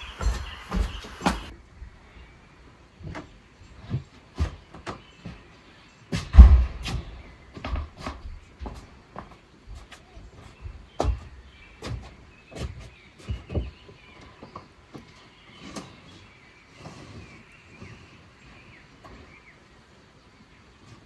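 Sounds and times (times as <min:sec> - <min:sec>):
faint high chirps: 0:00.0 - 0:01.5
irregular knocks and thumps: 0:00.0 - 0:01.5.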